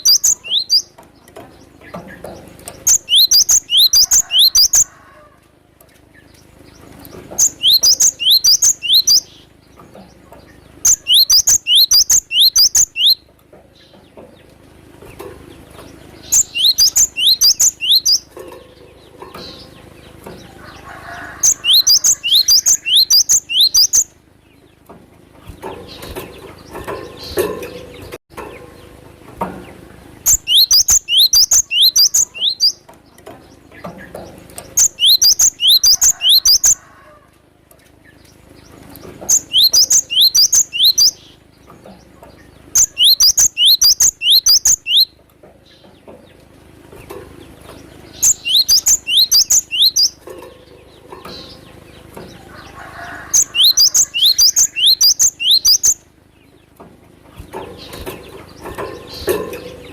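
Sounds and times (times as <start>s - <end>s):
bird singing high falling notes: 16.2s - 18.2s.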